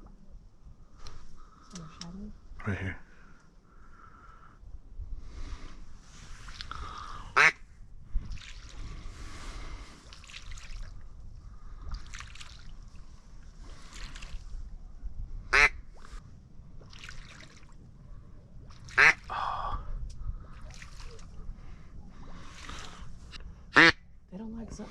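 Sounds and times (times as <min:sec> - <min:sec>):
low rumble of wind: 0:00.0 - 0:24.9
duck quacks: 0:07.4 - 0:07.6, 0:15.5 - 0:15.7, 0:19.0 - 0:19.2, 0:23.8 - 0:24.0.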